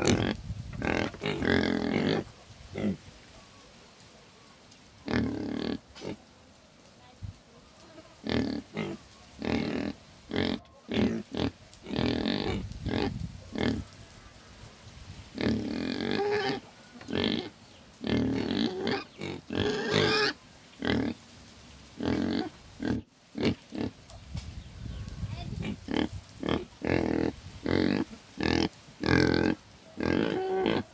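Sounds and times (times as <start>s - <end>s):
pig grunting: 0.0s - 3.0s, 5.0s - 6.2s, 8.2s - 13.8s, 15.4s - 21.2s, 22.0s - 24.0s, 25.5s - 30.9s
pig calls: 15.4s - 21.2s, 25.5s - 30.9s.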